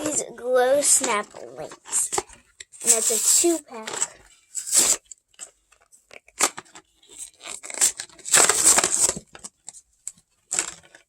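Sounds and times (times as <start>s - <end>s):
plastic packaging tearing and crinkling: 2.8s - 5.2s, 6.4s - 9.7s, 10.5s - 11.0s.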